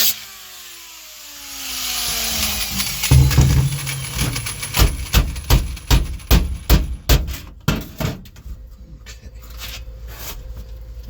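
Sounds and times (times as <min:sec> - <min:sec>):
hammer striking sheet metal: 0:02.2 - 0:07.5.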